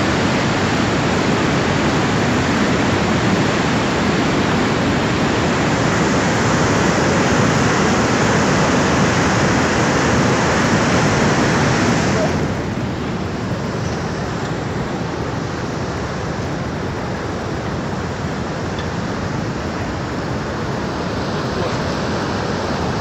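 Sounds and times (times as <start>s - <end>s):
floodwater rushing: 0.0s - 23.0s.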